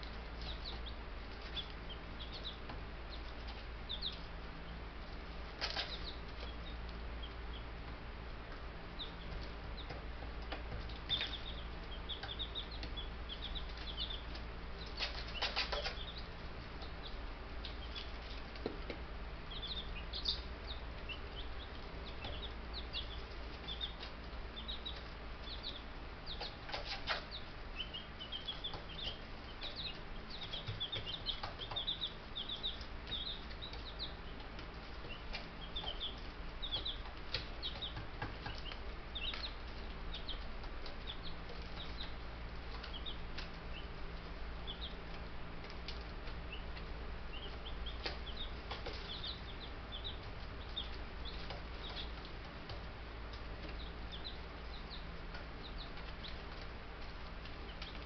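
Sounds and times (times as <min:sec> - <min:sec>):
chicks peeping: 0:00.0 - 0:58.0.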